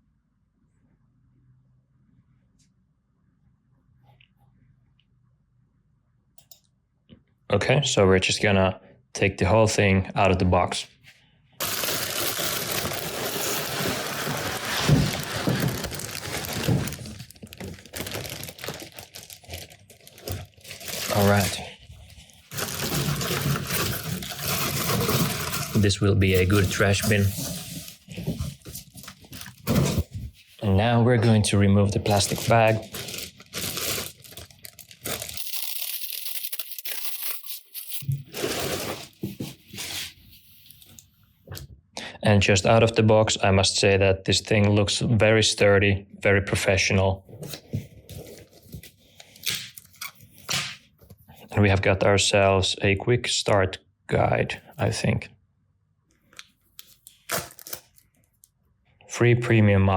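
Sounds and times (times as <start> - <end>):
plastic bag crinkling: 11.6 - 39.2, 56.8 - 58.5
cardboard packaging rustling: 11.6 - 40.2, 47.3 - 50.5, 56.8 - 58.1.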